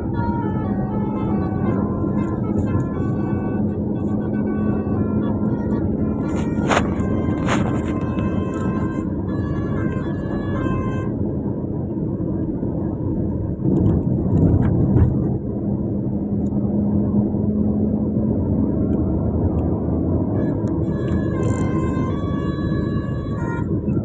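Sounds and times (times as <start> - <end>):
vehicle passing: 0.0 - 11.0
low steady hum: 0.0 - 24.0
road traffic rumble: 0.0 - 24.0.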